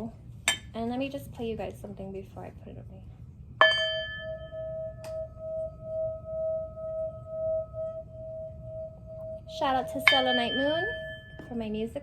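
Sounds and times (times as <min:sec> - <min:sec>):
singing bowl ringing: 0:03.6 - 0:12.0.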